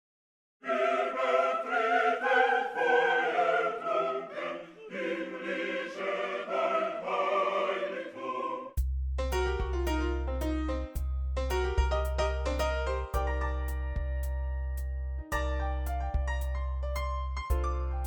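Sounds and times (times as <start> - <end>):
choir singing: 0.6 - 8.8.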